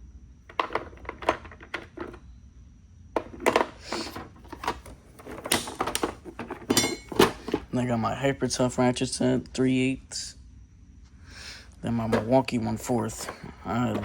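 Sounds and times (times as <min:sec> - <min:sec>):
clicks and knocks of tools in toolbox: 0:00.5 - 0:02.2, 0:03.2 - 0:07.7, 0:13.1 - 0:14.0
tools clattering: 0:03.2 - 0:07.8, 0:12.0 - 0:14.0.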